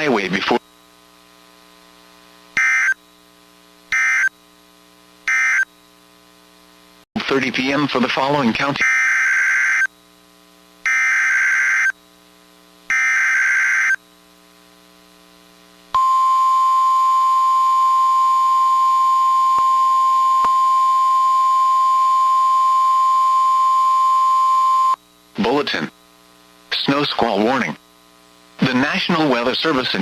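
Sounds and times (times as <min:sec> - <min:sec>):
data bursts: 0:02.6 - 0:03.0, 0:03.9 - 0:04.3
steady warning alarm tone: 0:02.6 - 0:03.0, 0:03.9 - 0:04.3, 0:05.3 - 0:05.7, 0:08.8 - 0:09.9, 0:10.8 - 0:12.0, 0:12.9 - 0:14.0, 0:16.0 - 0:25.0.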